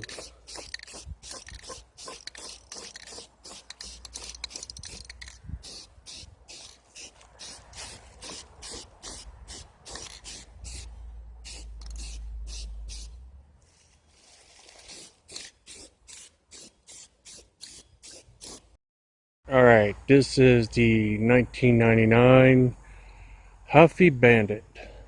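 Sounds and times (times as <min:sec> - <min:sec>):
spray paint can hissing: 0:00.0 - 0:13.1, 0:14.6 - 0:18.7.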